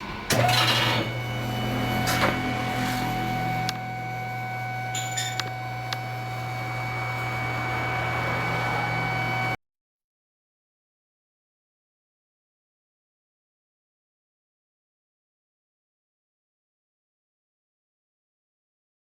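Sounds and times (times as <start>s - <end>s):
mechanical hum with whine: 0.0s - 9.6s.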